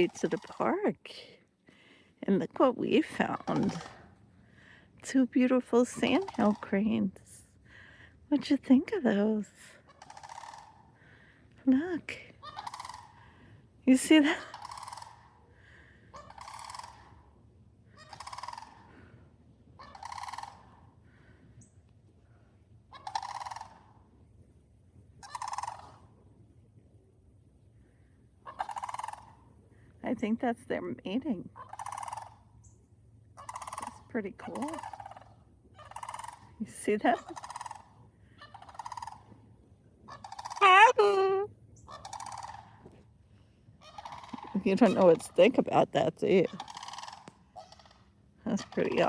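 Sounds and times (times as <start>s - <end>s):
cranes calling: 0.0s - 1.0s, 1.7s - 7.3s, 9.0s - 21.8s, 22.9s - 24.1s, 25.2s - 26.2s, 27.9s - 29.6s, 31.4s - 32.8s, 33.4s - 49.0s
wavering high-pitched cry: 40.1s - 42.7s.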